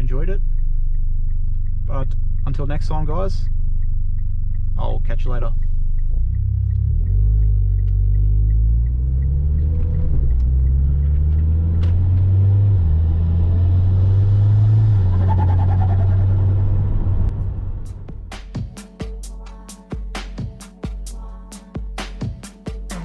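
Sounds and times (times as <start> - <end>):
car engine droning inside cabin: 0.0 - 18.4
light even ticking: 0.4 - 11.8.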